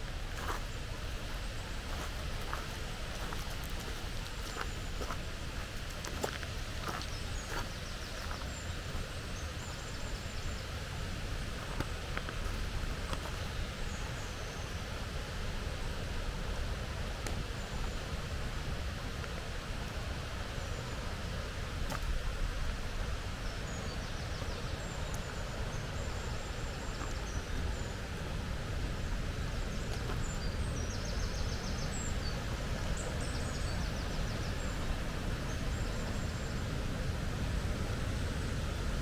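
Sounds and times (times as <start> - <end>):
songbirds chirping and trilling: 0.4 - 11.7, 29.0 - 39.0.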